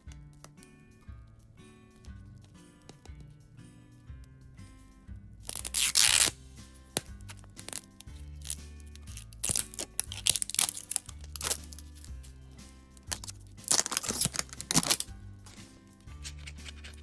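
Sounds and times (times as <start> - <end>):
soft background music: 0.0 - 17.0
packaging crinkling: 5.5 - 6.4, 7.6 - 12.1, 13.0 - 15.6
packaging ripping: 5.5 - 6.4, 7.6 - 12.1, 13.0 - 15.6.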